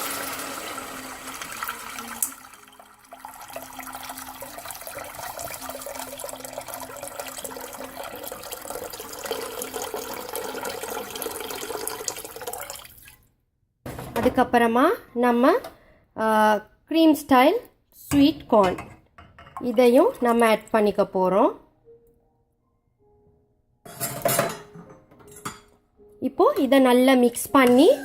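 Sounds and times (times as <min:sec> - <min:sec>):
water pouring into a pan: 0:00.0 - 0:13.2.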